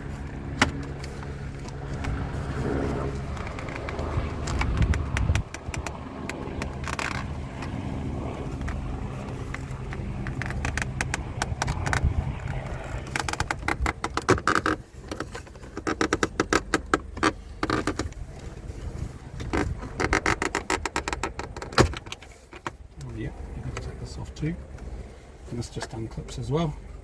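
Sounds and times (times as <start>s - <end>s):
steady low hum: 0.0s - 27.0s
plastic and metal clicking rattling: 3.1s - 7.8s, 8.6s - 18.3s, 19.3s - 24.0s.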